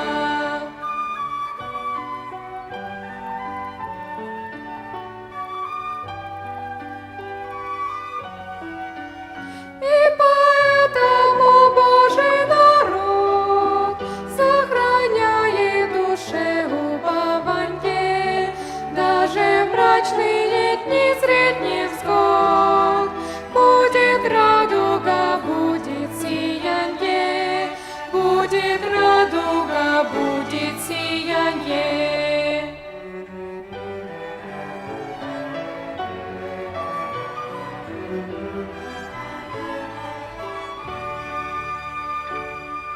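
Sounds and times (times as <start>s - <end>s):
choir singing: 0.0s - 1.3s, 9.8s - 42.0s
violin ensemble: 0.0s - 42.9s.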